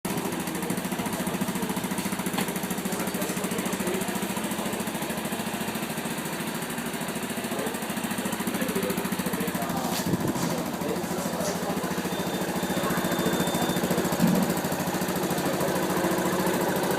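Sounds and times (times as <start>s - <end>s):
motorcycle engine idling: 0.1s - 16.9s.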